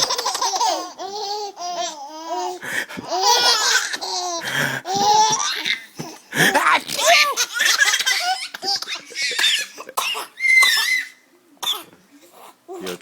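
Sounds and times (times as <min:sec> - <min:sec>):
children laughing: 0:06.4 - 0:11.2.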